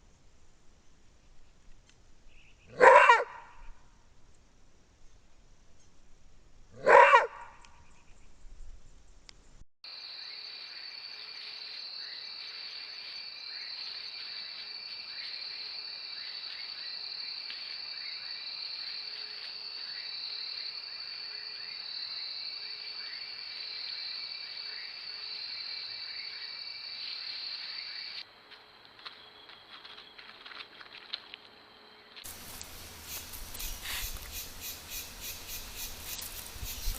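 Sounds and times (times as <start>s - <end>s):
insects trilling: 9.9s - 36.9s.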